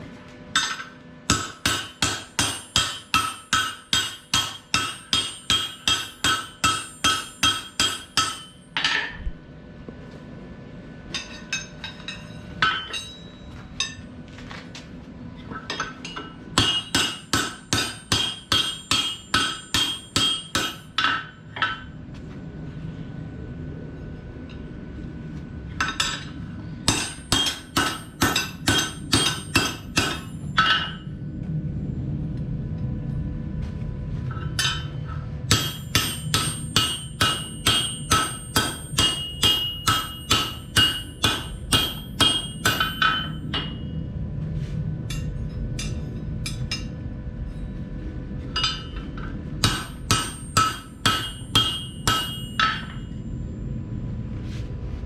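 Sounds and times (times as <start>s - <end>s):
steady low hum: 0.0s - 55.0s
hammer striking steel on anvil: 0.5s - 9.4s, 11.1s - 14.0s, 15.5s - 22.0s, 25.8s - 31.1s, 34.3s - 44.0s, 45.1s - 47.6s, 48.4s - 53.2s.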